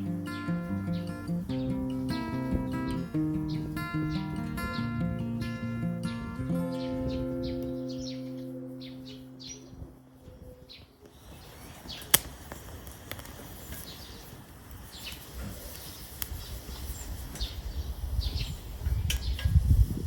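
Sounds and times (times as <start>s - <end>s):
birds chirping: 0.0s - 12.4s, 13.6s - 19.5s
wood fire crackling and popping: 11.0s - 18.1s.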